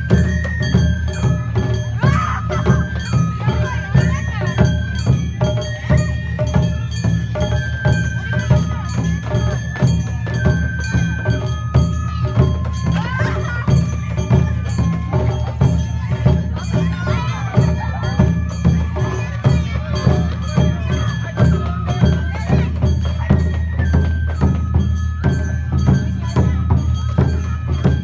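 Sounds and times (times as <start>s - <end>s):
bamboo flute melody: 0.0s - 28.0s
drumming and percussion: 0.0s - 28.0s.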